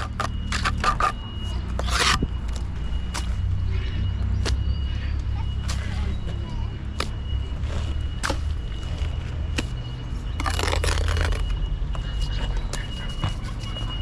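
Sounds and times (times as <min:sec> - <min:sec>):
noisy scraping: 0:00.0 - 0:02.4.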